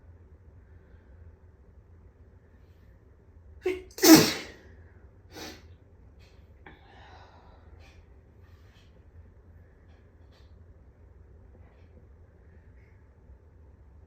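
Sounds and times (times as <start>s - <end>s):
person sneezing: 3.7s - 4.6s, 5.4s - 5.6s.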